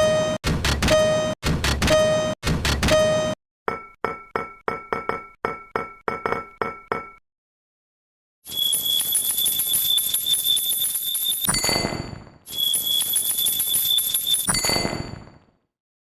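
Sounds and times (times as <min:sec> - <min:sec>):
steady shrill tone: 0:08.5 - 0:11.5, 0:12.5 - 0:14.5
jingling ring: 0:08.5 - 0:11.6, 0:12.5 - 0:14.5
level-crossing bell clanging: 0:08.5 - 0:11.7.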